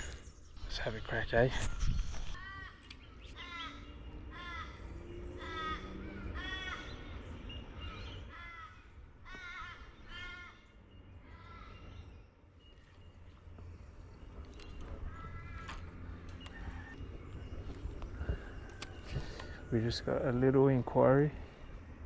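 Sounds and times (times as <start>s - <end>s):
low wind rumble: 0.0s - 22.0s
crow cawing: 3.4s - 7.2s, 7.8s - 12.1s, 15.0s - 17.0s.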